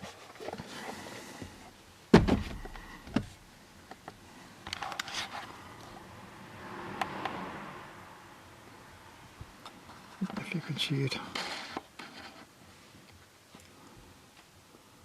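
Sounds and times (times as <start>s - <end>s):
loud thump: 2.1s - 3.3s.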